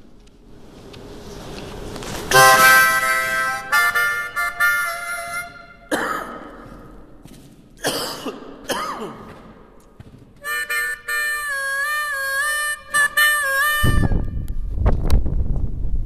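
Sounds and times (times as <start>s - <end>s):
harmonica chord with bends: 2.3s - 7.0s, 10.4s - 14.3s
person coughing: 5.9s - 7.0s, 7.8s - 9.6s.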